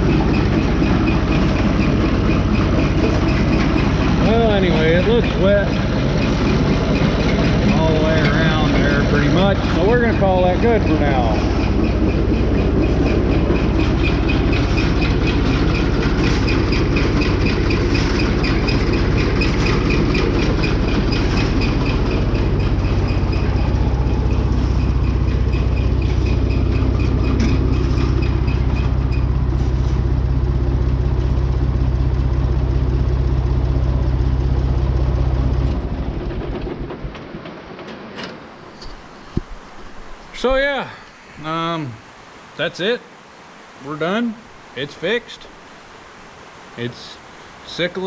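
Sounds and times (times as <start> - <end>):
fast metallic ticking of mower drive: 0.0 - 39.0
tractor engine idling: 0.0 - 40.7.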